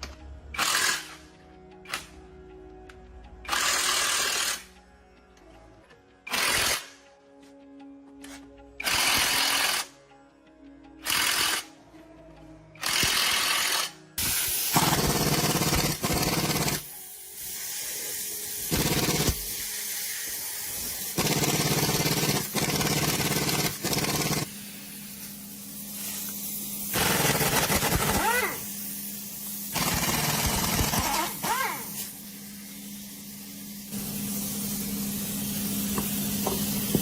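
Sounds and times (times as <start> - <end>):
power tool running in bursts: 21.1 - 24.5, 29.7 - 32.0.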